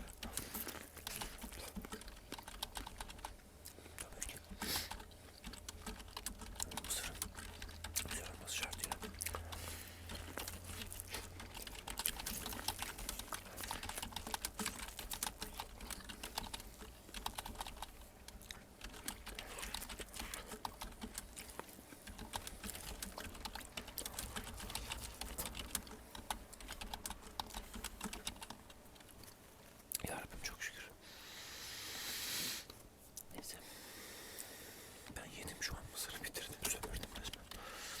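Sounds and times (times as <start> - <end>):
computer keyboard typing: 0.0 - 29.2, 36.4 - 37.6.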